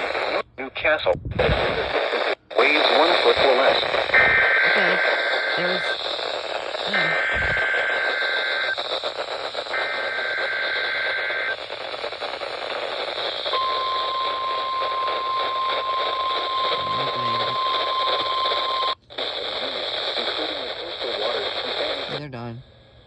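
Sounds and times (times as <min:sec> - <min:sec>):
radio static: 0:00.0 - 0:22.7
two-tone data warble: 0:02.6 - 0:22.2
steady warning alarm tone: 0:03.0 - 0:11.8, 0:12.4 - 0:19.0.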